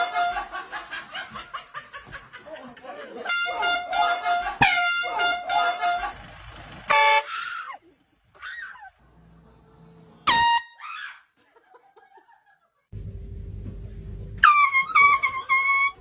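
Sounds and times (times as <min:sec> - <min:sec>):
air horn honking: 0:00.0 - 0:00.6, 0:03.2 - 0:06.3, 0:06.9 - 0:07.4, 0:10.2 - 0:10.8, 0:14.4 - 0:16.0.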